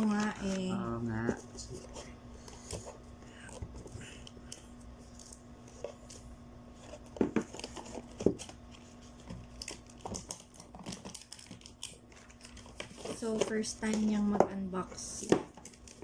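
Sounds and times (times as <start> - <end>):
packaging crinkling and tearing: 6.8 - 14.2, 15.0 - 16.0.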